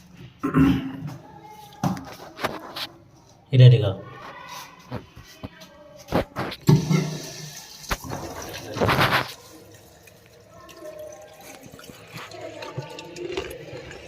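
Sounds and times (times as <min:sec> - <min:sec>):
water rushing in toilet cistern: 0:06.6 - 0:14.0.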